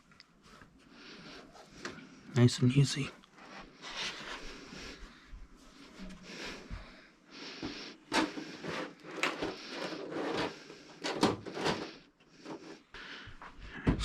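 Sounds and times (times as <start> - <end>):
scraping and rustling of parts: 8.1 - 12.7.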